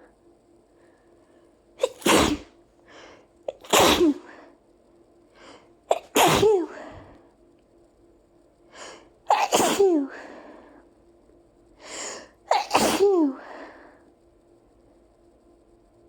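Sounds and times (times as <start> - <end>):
quiet breathing: 0.0 - 1.8, 2.8 - 3.4, 4.2 - 5.9, 6.7 - 7.5, 8.6 - 9.2, 10.0 - 11.1, 11.7 - 12.4, 13.3 - 14.2
person sneezing: 1.8 - 2.5, 3.5 - 4.4, 5.9 - 7.0, 9.3 - 10.3, 12.5 - 13.7.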